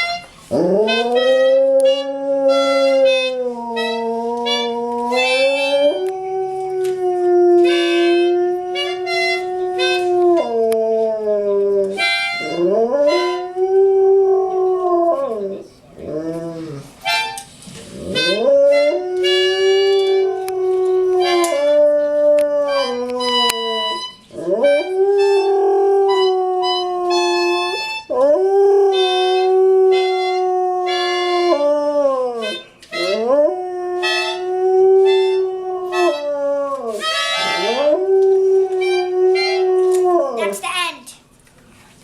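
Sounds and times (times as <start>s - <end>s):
music: 0.0s - 6.7s, 7.6s - 10.8s, 11.9s - 13.7s, 17.0s - 17.6s, 18.2s - 21.8s, 22.6s - 25.5s, 26.1s - 28.2s, 28.9s - 31.6s, 32.4s - 33.3s, 34.0s - 36.4s, 37.0s - 37.9s, 38.8s - 39.9s.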